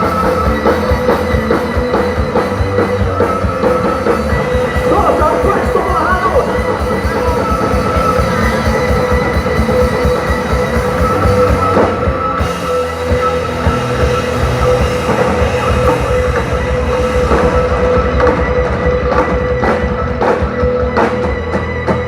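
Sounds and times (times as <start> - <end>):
loud live music: 0.0 - 22.0.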